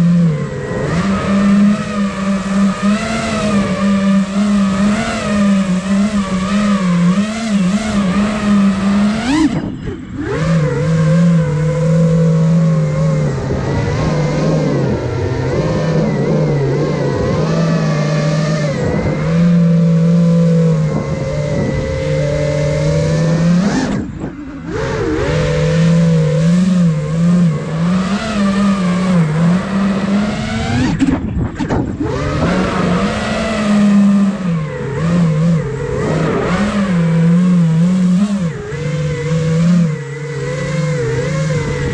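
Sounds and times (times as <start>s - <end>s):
drone motors whining: 0.0s - 41.9s.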